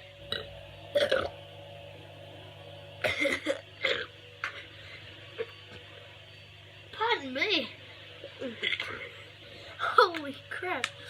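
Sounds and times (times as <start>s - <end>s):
person burping: 0.3s - 1.3s, 3.0s - 4.6s, 8.4s - 9.0s.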